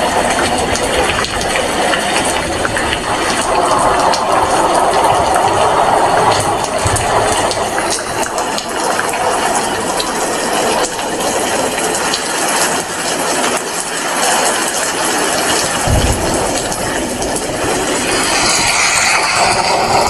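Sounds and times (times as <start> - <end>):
heavy rain falling: 0.0 - 20.0
low thump: 15.8 - 19.3.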